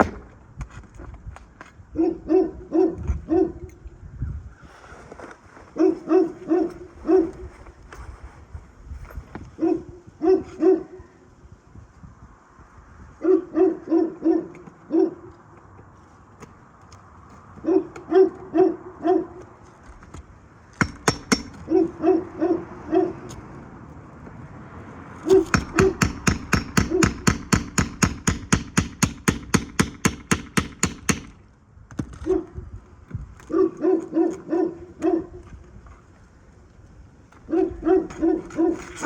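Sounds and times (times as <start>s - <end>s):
roofing tools striking metal: 20.8s - 21.7s, 25.3s - 31.4s.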